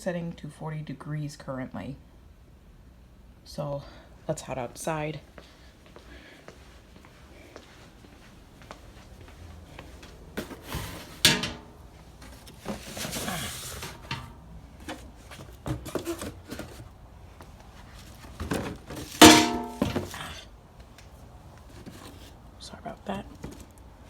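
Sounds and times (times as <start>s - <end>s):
objects knocking and clattering: 10.4s - 16.9s, 18.3s - 20.3s
ringing clanks: 11.3s - 11.8s, 19.2s - 20.1s.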